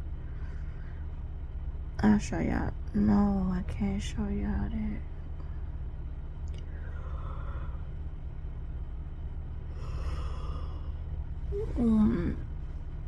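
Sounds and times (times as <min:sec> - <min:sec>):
steady low hum: 0:00.0 - 0:13.0
woman breathing out: 0:09.8 - 0:11.0
woman sighing: 0:11.6 - 0:12.5.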